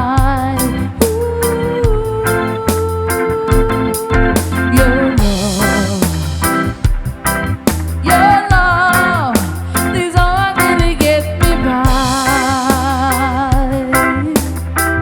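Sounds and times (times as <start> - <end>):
deep bass: 0.0 - 15.0
lead line with vibrato: 0.0 - 15.0
reggae band music: 0.0 - 15.0
drum hits: 3.6 - 13.8.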